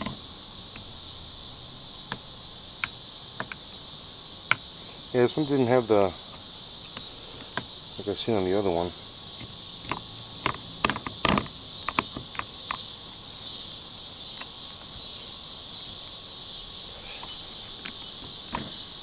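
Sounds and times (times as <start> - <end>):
sharp clicks and knocks: 0.0 - 0.9, 2.0 - 3.6, 4.5 - 4.7, 6.3 - 7.7, 9.4 - 12.9, 17.2 - 18.8
high-pitched insect chorus: 0.0 - 19.0.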